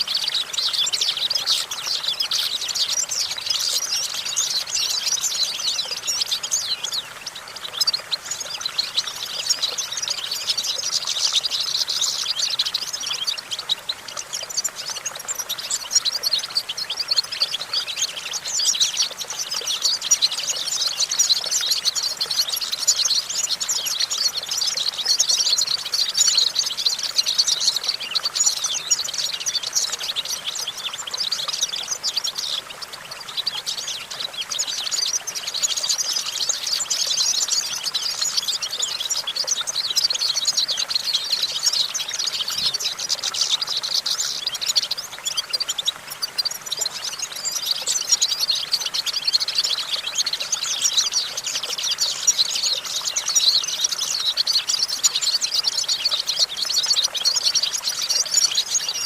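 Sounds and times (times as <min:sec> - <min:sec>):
goldfinch singing: 0:00.0 - 0:59.0.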